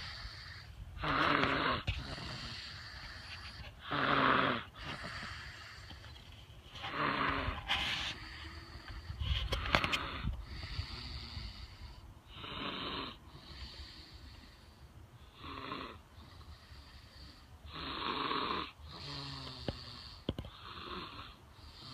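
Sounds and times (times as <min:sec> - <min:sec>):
snoring: 0:00.0 - 0:05.8, 0:06.9 - 0:07.6, 0:12.3 - 0:14.0, 0:15.3 - 0:21.9.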